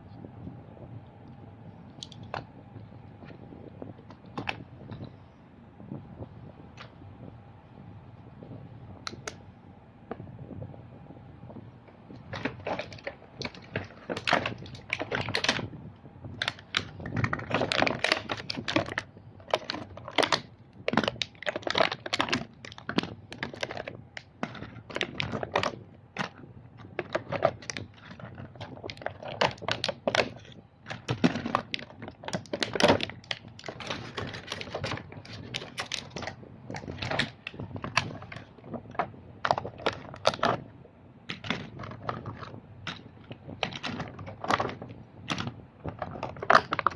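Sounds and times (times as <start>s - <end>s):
plastic toy trucks clacking: 12.2s - 15.7s, 16.4s - 40.6s, 41.3s - 46.9s.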